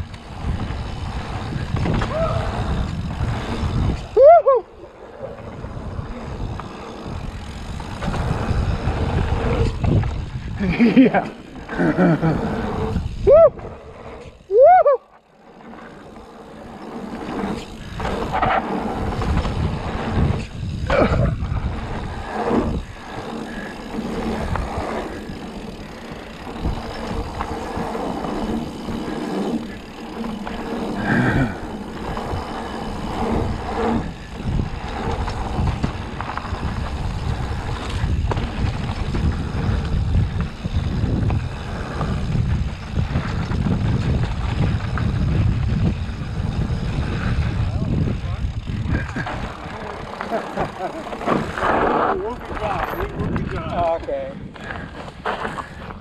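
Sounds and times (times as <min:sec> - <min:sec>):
bike hitting bumps: 0:00.0 - 0:04.4, 0:05.3 - 0:14.5, 0:15.4 - 0:56.0
wind on microphone: 0:00.0 - 0:04.6, 0:05.3 - 0:10.9, 0:30.9 - 0:50.2, 0:51.3 - 0:56.0
mountain bike rattling on dirt: 0:00.0 - 0:56.0.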